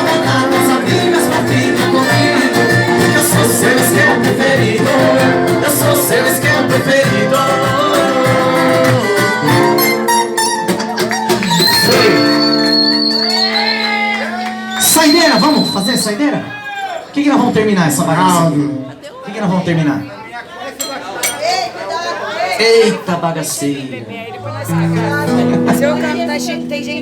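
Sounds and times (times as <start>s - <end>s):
person singing: 0.0s - 10.2s
plucked guitar: 0.0s - 14.4s, 24.4s - 27.0s.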